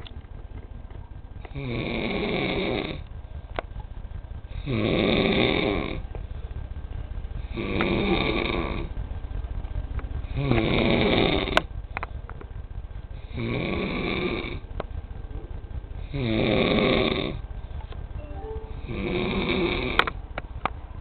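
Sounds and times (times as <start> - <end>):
loud snoring: 4.6 - 6.0.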